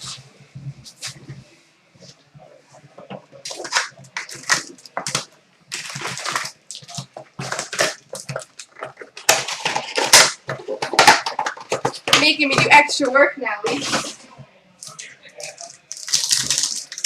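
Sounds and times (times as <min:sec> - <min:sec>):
card pack wrappers crinkling: 0:03.1 - 0:12.2, 0:14.8 - 0:17.0.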